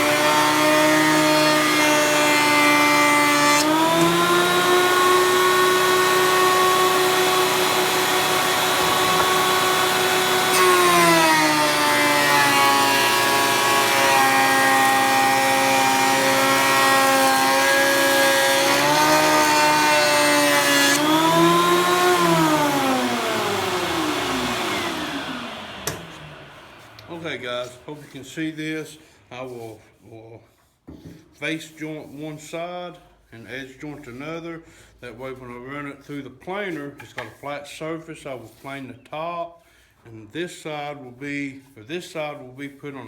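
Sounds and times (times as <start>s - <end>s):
jointer motor whine and cutter noise: 0.0s - 27.3s.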